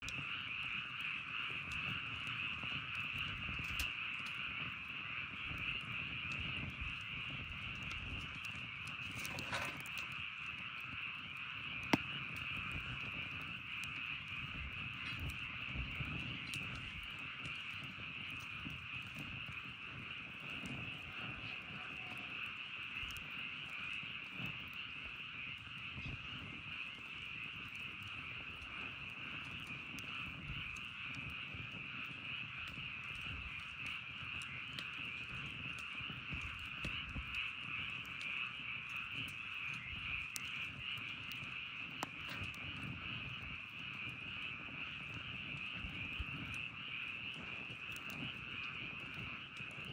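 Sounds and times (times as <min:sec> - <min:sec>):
campfire crackling: 0:00.0 - 0:49.9
chorus of calling animals: 0:19.6 - 0:24.2.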